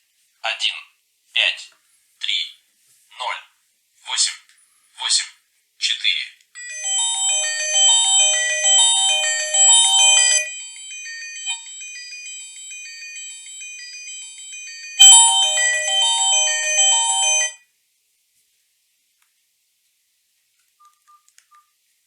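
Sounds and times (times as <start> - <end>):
electronic chiming ringtone melody: 6.6 - 17.6.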